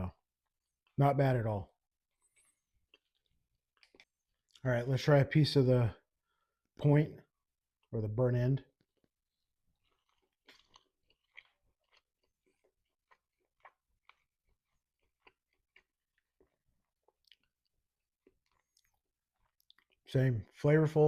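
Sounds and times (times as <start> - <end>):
chewing mouth clicks: 2.2 - 4.6, 9.7 - 20.1.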